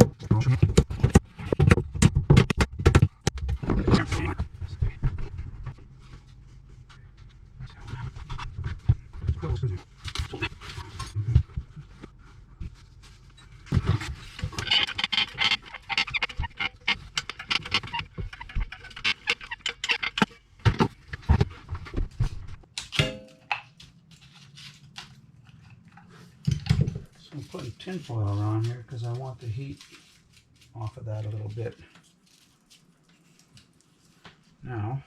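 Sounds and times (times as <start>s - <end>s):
clicks and knocks: 13.7s - 23.8s
aluminium foil crinkling: 23.8s - 26.4s, 27.0s - 34.6s.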